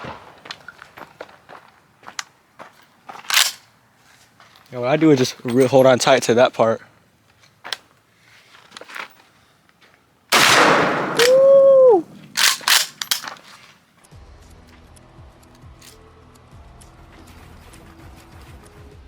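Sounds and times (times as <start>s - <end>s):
shotgun blast: 10.3s - 13.0s.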